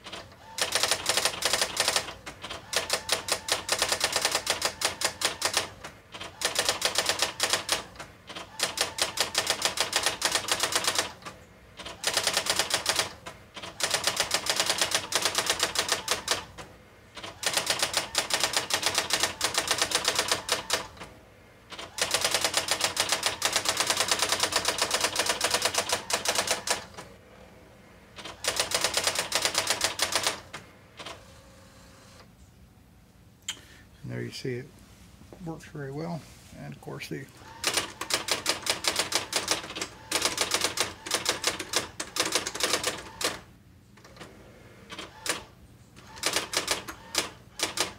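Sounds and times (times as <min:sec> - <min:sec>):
electronic typewriter print strikes: 0:00.0 - 0:11.2, 0:11.8 - 0:16.5, 0:17.2 - 0:21.0, 0:21.7 - 0:27.0, 0:28.2 - 0:31.2, 0:37.5 - 0:43.4, 0:44.9 - 0:47.9.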